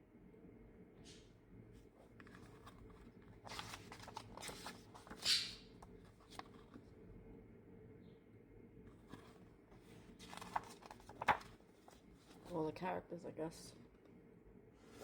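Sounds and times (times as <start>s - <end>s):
paper rustling: 2.2s - 6.8s, 9.0s - 12.6s.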